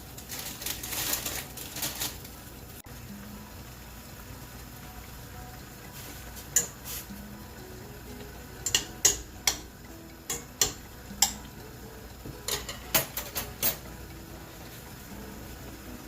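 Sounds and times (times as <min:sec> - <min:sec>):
utensils clinking against dishes: 0:06.5 - 0:07.0, 0:08.6 - 0:09.7, 0:10.3 - 0:11.5, 0:12.3 - 0:14.0.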